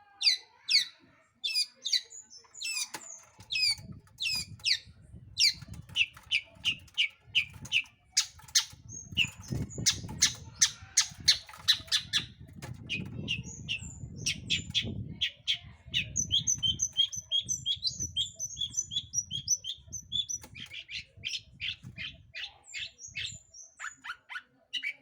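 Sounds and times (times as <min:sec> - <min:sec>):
bird harsh scratchy calls: 0:00.3 - 0:14.9.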